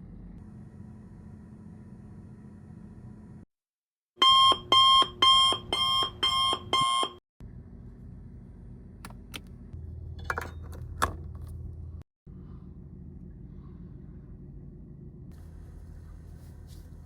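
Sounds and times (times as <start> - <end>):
electronic alarm beeping: 4.2 - 7.2
low steady hum: 4.2 - 17.0.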